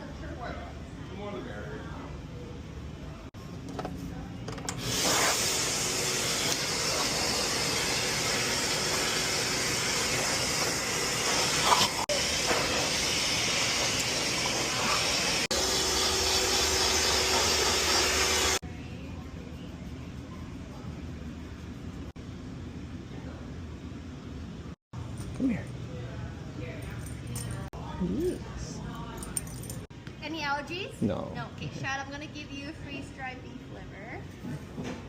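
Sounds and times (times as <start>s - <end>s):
blow dryer blowing air: 4.8s - 18.6s.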